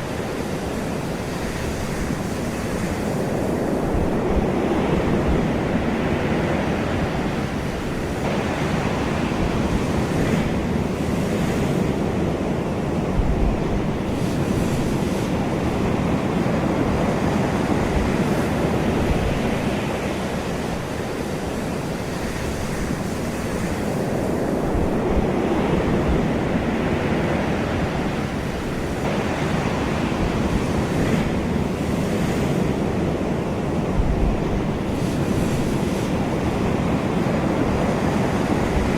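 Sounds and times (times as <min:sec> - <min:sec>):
waves breaking: 0:00.0 - 0:38.9
wind noise on microphone: 0:00.0 - 0:38.9.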